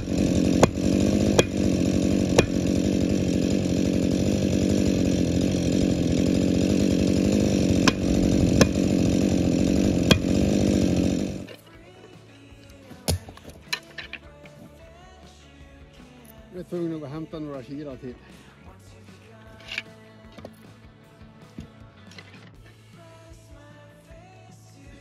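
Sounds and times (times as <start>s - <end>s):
chainsaw cutting wood: 0.0s - 12.0s, 12.7s - 14.7s.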